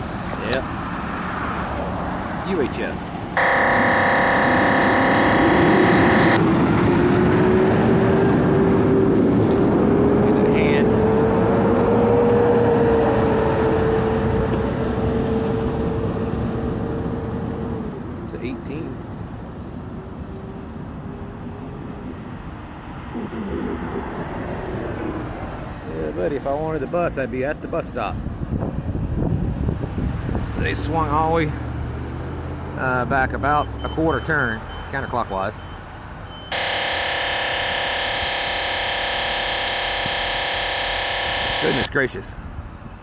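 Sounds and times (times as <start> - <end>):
harsh steady radio buzz: 3.4 - 6.4, 36.5 - 41.9.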